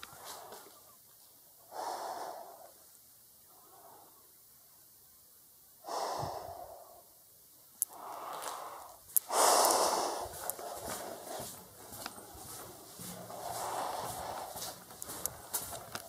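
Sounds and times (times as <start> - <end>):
person breathing heavily: 1.7 - 2.8, 5.8 - 7.1, 7.9 - 16.0.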